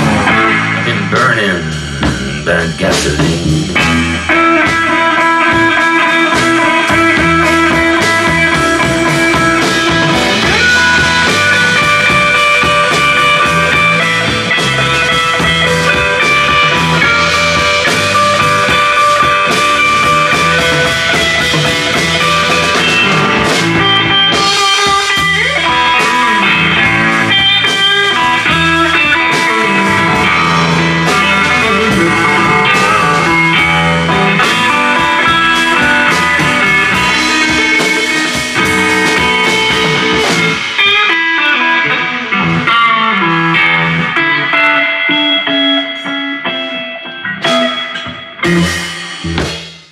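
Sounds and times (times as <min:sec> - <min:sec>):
person singing: 0:00.0 - 0:01.8, 0:02.4 - 0:13.8, 0:16.0 - 0:40.8
double bass: 0:00.0 - 0:04.5, 0:07.0 - 0:24.3, 0:26.6 - 0:27.3, 0:29.7 - 0:34.5
drums: 0:00.0 - 0:49.9
guitar playing: 0:00.0 - 0:49.9.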